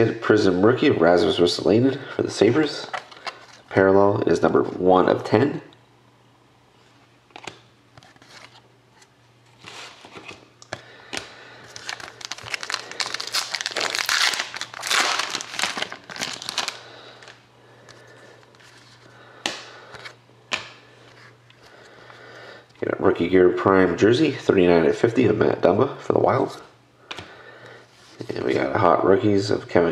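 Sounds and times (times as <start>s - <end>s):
wrapper crinkling and tearing: 11.6s - 17.4s.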